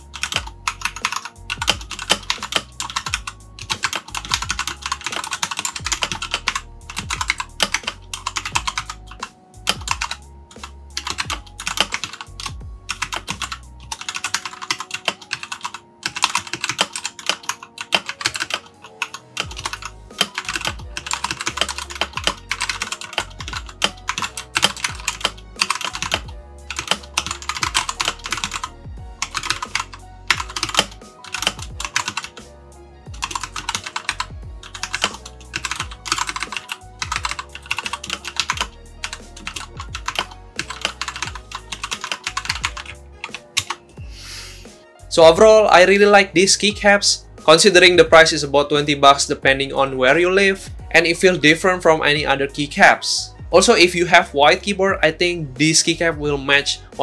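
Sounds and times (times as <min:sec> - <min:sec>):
mechanical keyboard typing: 0:00.0 - 0:32.4, 0:33.1 - 0:43.8
background music: 0:00.0 - 0:57.0.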